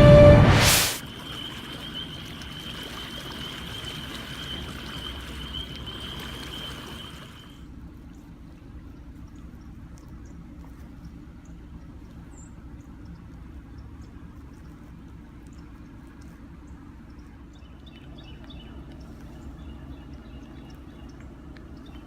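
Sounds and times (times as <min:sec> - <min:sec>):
music: 0:00.0 - 0:00.6
floodwater rushing: 0:00.0 - 0:07.6
thin high whine: 0:00.0 - 0:07.6.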